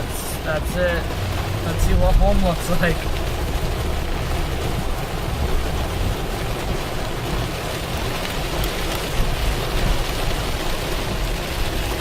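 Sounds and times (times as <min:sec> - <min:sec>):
low rumble: 0:00.0 - 0:07.5
heavy rain pouring: 0:00.0 - 0:12.0.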